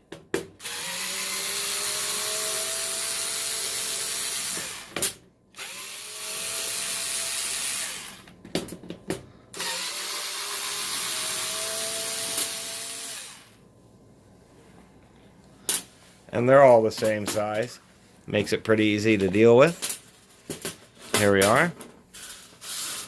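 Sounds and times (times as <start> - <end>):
power screwdriver motor whine: 0.6 - 5.0, 5.6 - 8.3, 9.6 - 13.5.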